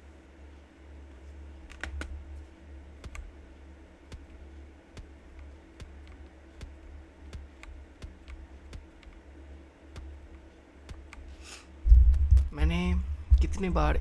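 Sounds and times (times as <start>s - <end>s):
soft keyboard key clicks: 1.6s - 2.2s, 3.0s - 3.3s.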